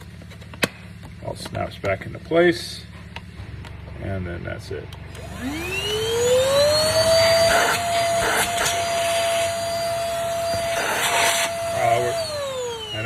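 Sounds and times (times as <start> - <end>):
vacuum motor whine: 5.0 - 13.0.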